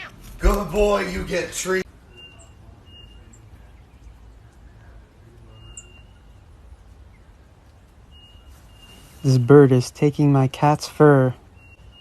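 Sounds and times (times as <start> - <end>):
small bird chirping: 1.9 - 9.9, 11.4 - 12.0.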